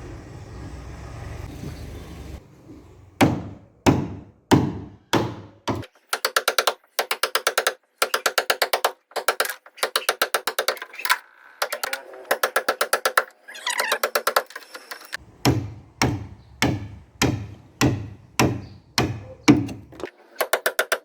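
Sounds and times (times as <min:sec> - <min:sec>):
hard ringing knocks: 0:15.4 - 0:20.0.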